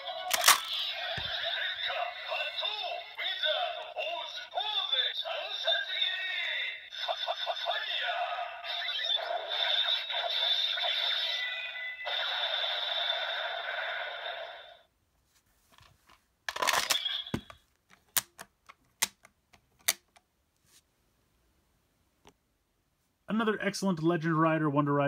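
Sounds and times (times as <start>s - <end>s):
toy speaker sound effects and music: 0.0s - 14.8s, 16.5s - 17.6s
plastic toy clicks: 0.3s - 0.8s, 16.5s - 20.2s.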